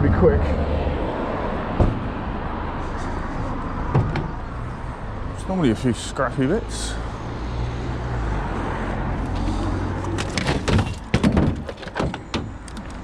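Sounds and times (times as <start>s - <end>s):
vehicle engine rumble: 0.0s - 13.0s
scrap metal knocking and clattering: 9.3s - 13.0s.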